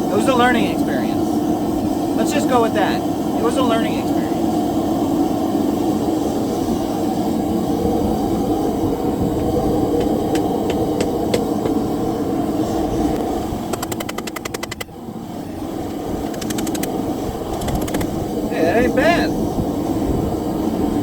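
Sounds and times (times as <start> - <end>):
sharp metallic taps: 13.7 - 14.9, 16.2 - 16.9, 17.6 - 18.1.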